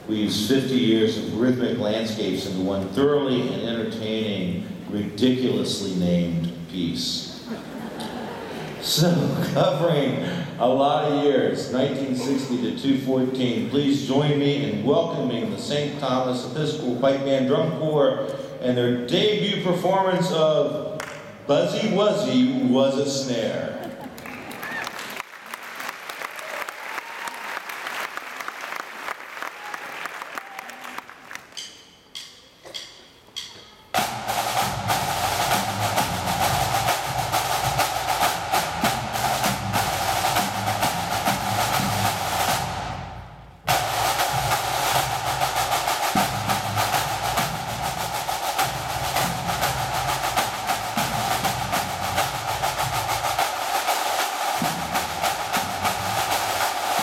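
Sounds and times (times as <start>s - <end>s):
snare tenor and bass drumming: 0.0s - 7.5s, 8.9s - 17.9s, 31.5s - 57.0s
drum stick clicks: 31.6s - 33.8s.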